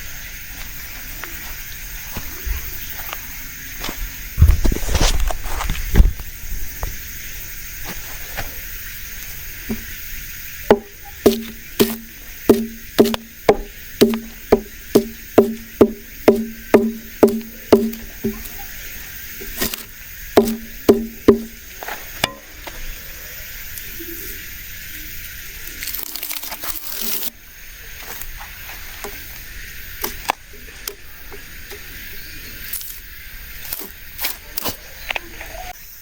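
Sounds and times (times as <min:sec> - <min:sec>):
knocking on wood: 0:10.7 - 0:18.5, 0:20.4 - 0:21.6.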